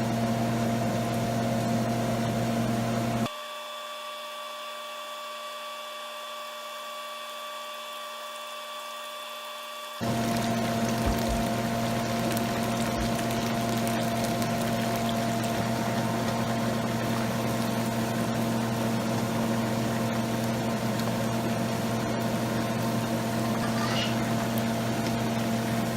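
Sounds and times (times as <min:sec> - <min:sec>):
motor hum: 0:07.8 - 0:25.9
food sizzling in hot oil: 0:10.0 - 0:25.9.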